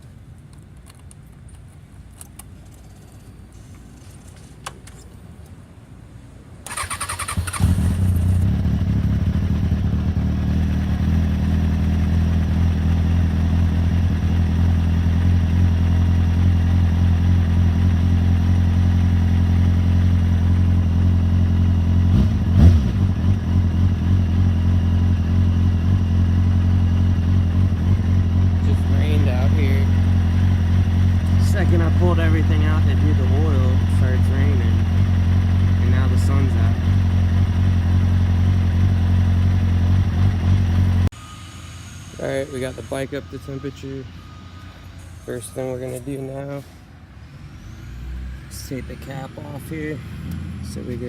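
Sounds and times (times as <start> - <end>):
motorcycle electric starter cranking: 6.7 - 8.5
motorcycle engine idling: 6.7 - 41.1.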